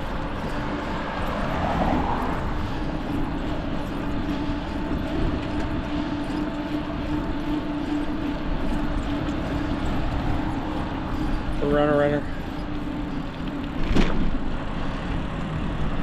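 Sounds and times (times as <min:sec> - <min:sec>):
steady low hum: 0:00.0 - 0:16.0
wind rushing over microphone: 0:00.0 - 0:16.0.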